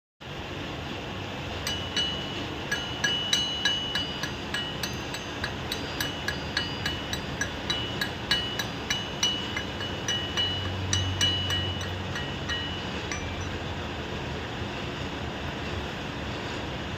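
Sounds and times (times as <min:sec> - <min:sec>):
hammer striking metal: 0:01.6 - 0:13.8.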